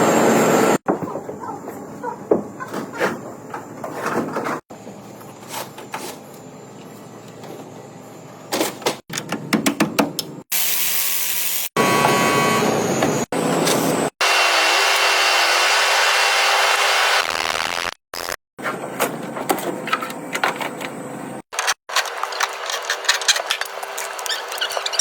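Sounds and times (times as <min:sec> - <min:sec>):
power tool running: 0:10.5 - 0:18.4.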